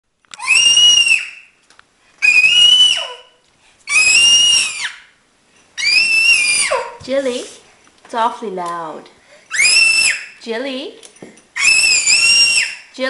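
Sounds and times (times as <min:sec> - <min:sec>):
baby shrieking: 0:00.4 - 0:01.5, 0:02.2 - 0:05.1, 0:05.8 - 0:07.0, 0:09.5 - 0:10.4, 0:11.6 - 0:12.9.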